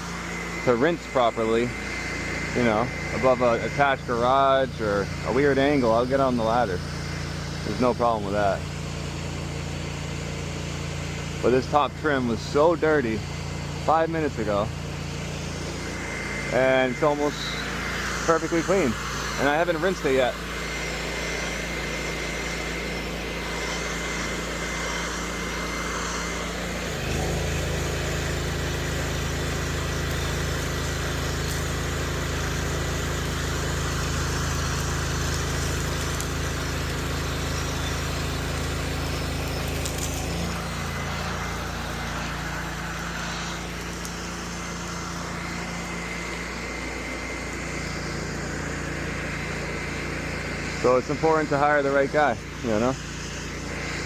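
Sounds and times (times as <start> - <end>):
pressure washer engine running: 0.0 - 54.0
water spraying hiss: 15.2 - 48.6.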